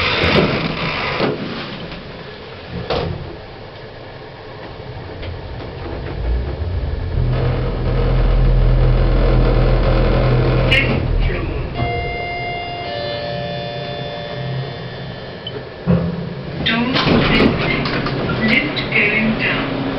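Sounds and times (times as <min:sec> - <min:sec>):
lift machinery humming: 0:02.0 - 0:19.9
lift doors clunking shut: 0:15.4 - 0:18.9.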